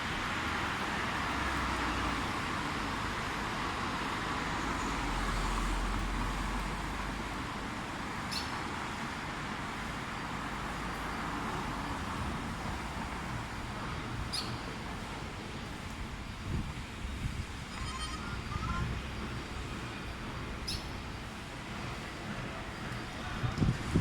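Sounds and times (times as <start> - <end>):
road traffic rumble: 0.0 - 24.0
brief high squeaks: 17.7 - 18.9.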